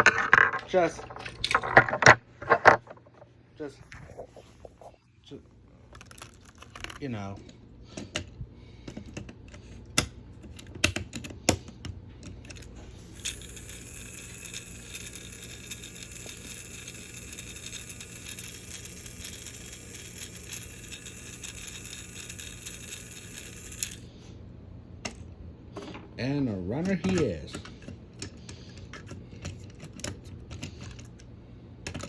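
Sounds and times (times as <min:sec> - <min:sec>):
plastic toy clicks and knocks: 0:12.4 - 0:24.0
toy electric motor whirring: 0:12.5 - 0:24.2.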